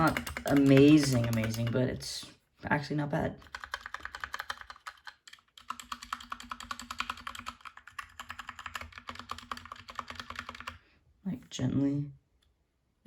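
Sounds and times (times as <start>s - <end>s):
fast typing on mechanical keyboard: 0.0s - 1.9s, 3.4s - 10.8s.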